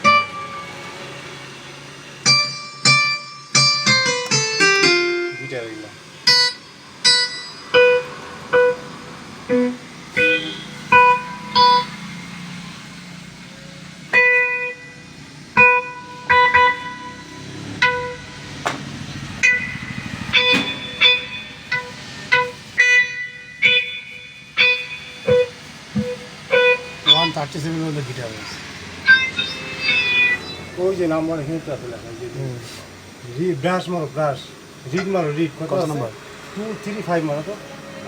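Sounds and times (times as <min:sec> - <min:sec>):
keyboard plucked guitar notes: 0:00.0 - 0:01.0, 0:02.2 - 0:12.0, 0:14.1 - 0:31.8, 0:34.8 - 0:36.1.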